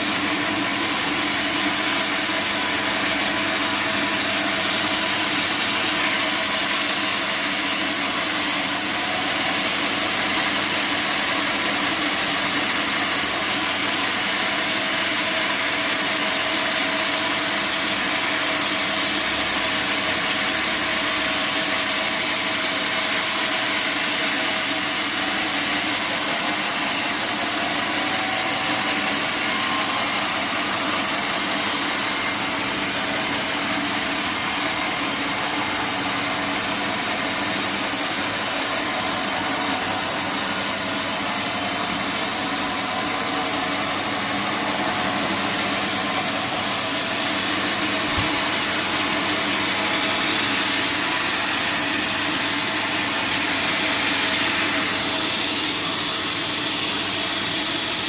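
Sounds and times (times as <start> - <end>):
bandsaw cutting wood: 0.0 - 58.0
machine hum: 23.5 - 55.6.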